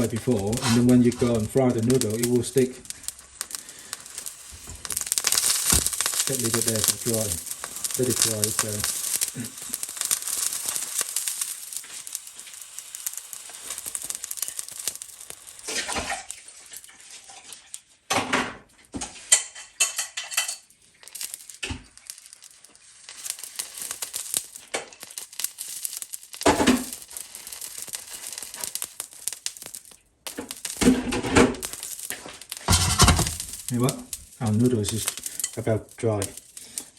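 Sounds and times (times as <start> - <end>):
water sizzling on hot wok: 0.0 - 36.9
pans and utensils clattering: 18.1 - 20.6, 32.7 - 33.4.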